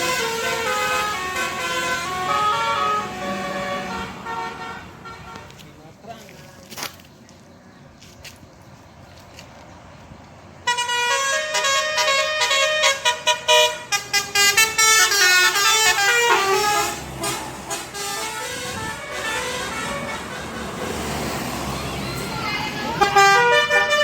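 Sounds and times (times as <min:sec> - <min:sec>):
multi-tone bus horn melody: 0:00.0 - 0:05.6, 0:10.6 - 0:24.0
bus engine: 0:00.0 - 0:24.0
road noise: 0:00.0 - 0:24.0.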